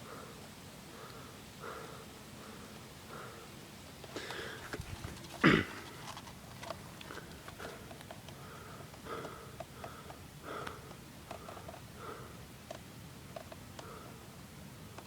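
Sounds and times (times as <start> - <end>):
light clicks and rustles: 3.9 - 11.9
person breathing and sniffing: 4.1 - 6.2.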